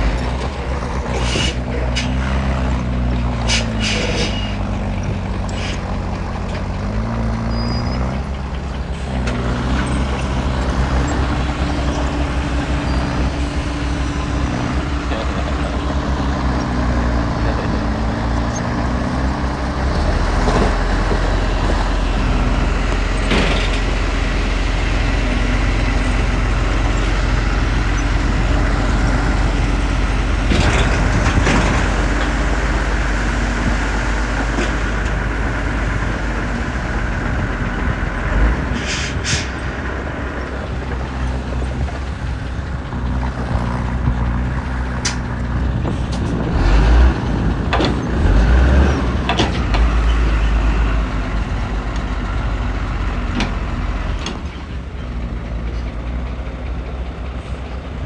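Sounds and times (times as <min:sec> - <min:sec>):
heavy diesel machinery running: 0:00.0 - 0:58.0.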